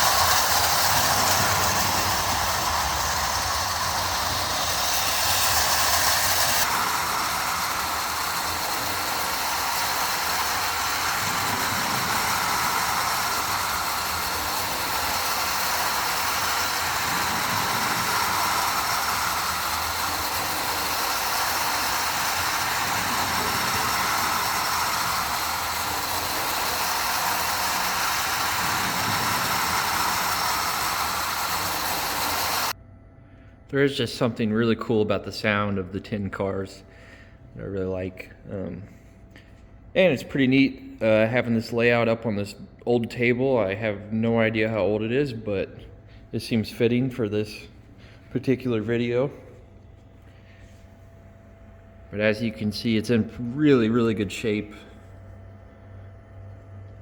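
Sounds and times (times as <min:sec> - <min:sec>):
toy train whirring rattle: 0:00.0 - 0:32.7.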